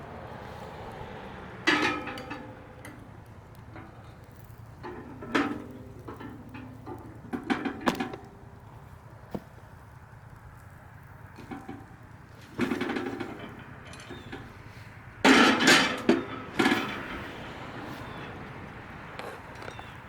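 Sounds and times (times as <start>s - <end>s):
cast iron clanking and scraping: 1.6s - 8.6s, 11.3s - 20.0s
loud metal clanks: 1.7s - 2.8s, 15.2s - 18.4s.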